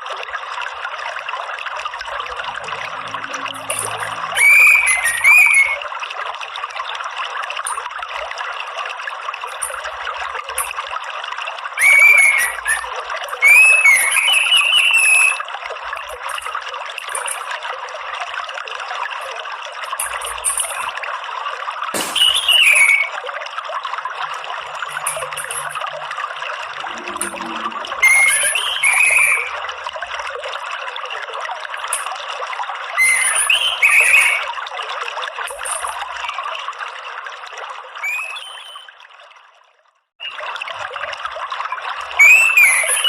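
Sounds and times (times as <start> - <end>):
running water trickling: 0.0 - 43.0
thrush singing whistled notes: 2.7 - 5.8, 11.8 - 15.4, 22.0 - 23.2, 26.7 - 29.6, 33.0 - 34.5, 38.0 - 38.9, 42.2 - 43.0
thrush chirping: 3.2 - 5.8
faint high bird chips: 3.5 - 5.8, 11.8 - 15.4, 22.1 - 23.2, 26.8 - 29.6.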